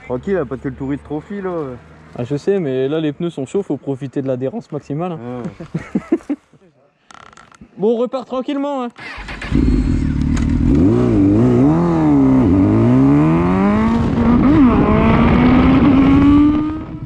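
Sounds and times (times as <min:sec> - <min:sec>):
motorcycle engine revving: 0:09.0 - 0:17.0.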